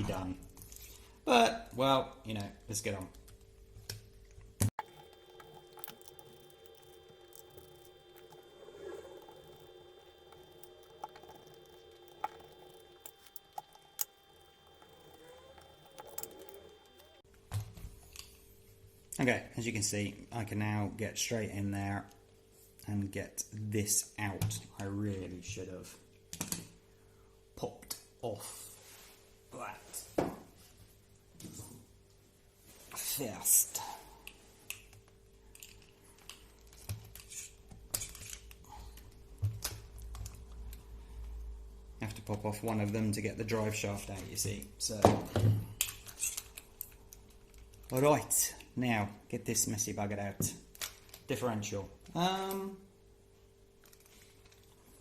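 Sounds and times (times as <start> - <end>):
low steady hum: 4.2 - 17.3
small plastic parts clicking: 4.8 - 17.2.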